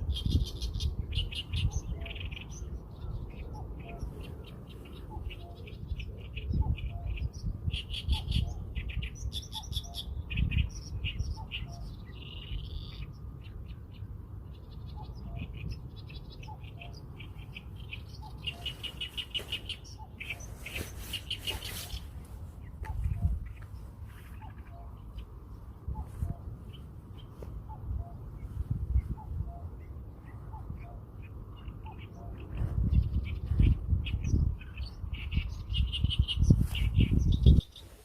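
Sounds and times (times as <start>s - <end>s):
small birds chirping: 0.0s - 38.0s
steady low rumble: 10.1s - 37.6s.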